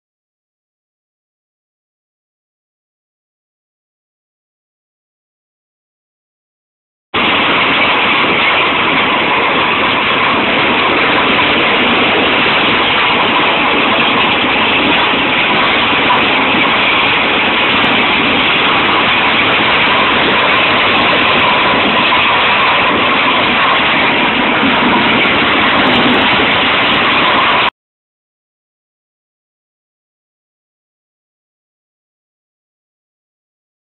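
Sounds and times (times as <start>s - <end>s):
faint steady whine: 7.2s - 27.7s
wood chipper running: 7.2s - 27.7s.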